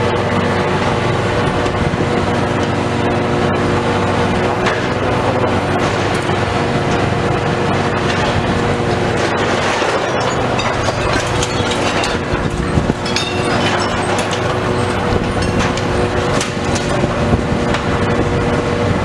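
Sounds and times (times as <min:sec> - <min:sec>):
diesel engine running under load: 0:00.0 - 0:19.0
metal and concrete breaking: 0:07.9 - 0:17.8.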